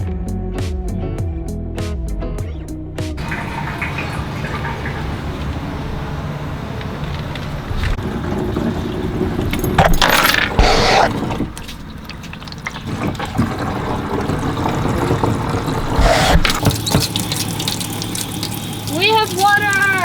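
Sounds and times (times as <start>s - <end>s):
metal parts clinking: 9.7s - 10.8s.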